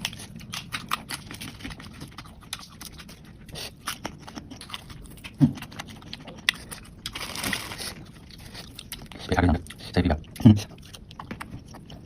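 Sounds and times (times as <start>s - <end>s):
wet chewing: 0.0s - 12.0s.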